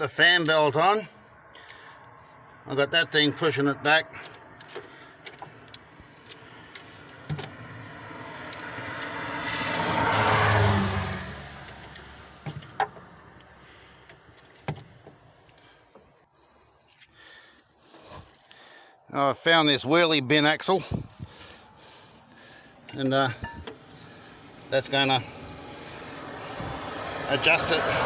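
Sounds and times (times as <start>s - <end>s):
vehicle passing by: 1.1s - 15.8s, 20.8s - 28.0s.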